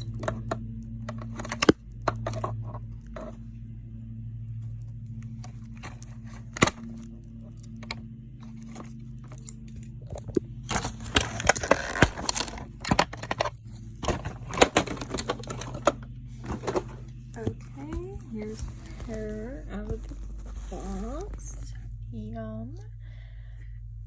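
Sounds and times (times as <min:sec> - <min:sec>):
packaging clicks: 0:00.0 - 0:02.6, 0:05.5 - 0:21.7
plastic and cardboard crackling: 0:00.0 - 0:03.4, 0:04.9 - 0:21.9
steady low hum: 0:00.0 - 0:24.0.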